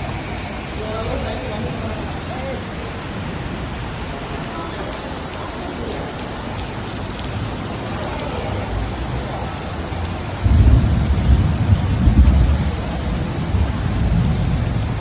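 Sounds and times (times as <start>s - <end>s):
heavy rain falling: 0.0s - 15.0s
loud deep rumble: 8.6s - 15.0s.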